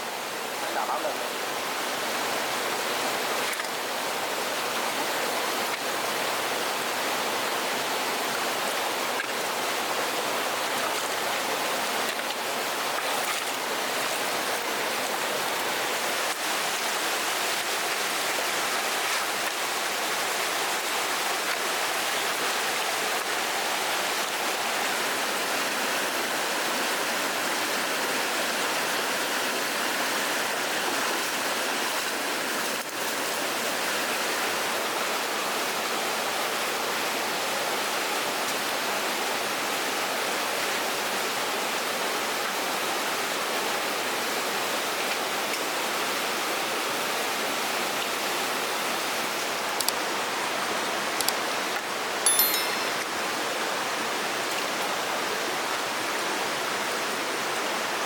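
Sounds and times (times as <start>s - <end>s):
water rushing: 0.1s - 36.9s.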